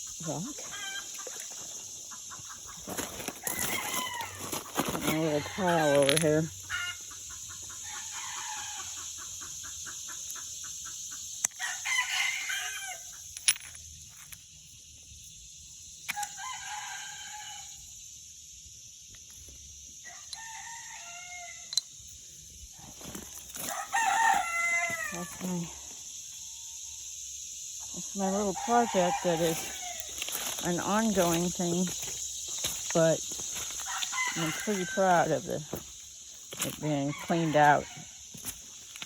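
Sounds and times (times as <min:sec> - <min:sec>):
rooster crowing: 0:03.4 - 0:06.1, 0:06.7 - 0:07.1, 0:07.8 - 0:09.1, 0:11.6 - 0:13.1, 0:16.2 - 0:17.8, 0:20.0 - 0:21.8, 0:23.6 - 0:25.7, 0:28.4 - 0:30.3, 0:33.8 - 0:35.4, 0:36.9 - 0:38.3.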